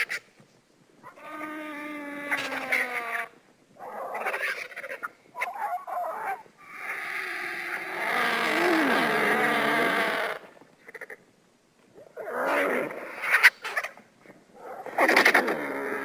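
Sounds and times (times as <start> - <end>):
harsh bird calls: 1.0 - 11.1.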